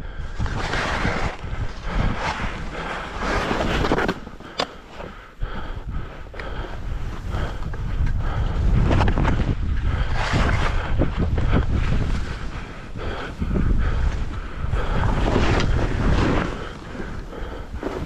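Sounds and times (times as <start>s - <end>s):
wind buffeting microphone: 0.0s - 4.0s, 5.1s - 18.0s
skis scraping on snow: 0.4s - 5.1s, 8.6s - 18.0s.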